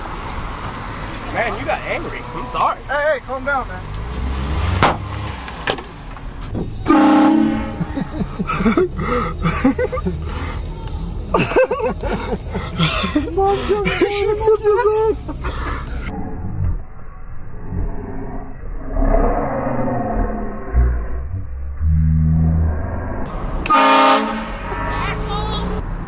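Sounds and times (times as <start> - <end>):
car engine running: 0.0 - 17.0
voices: 1.1 - 4.1, 6.4 - 16.4, 24.3 - 25.8
vehicle-mounted train horn blast: 6.8 - 7.9, 23.6 - 24.7.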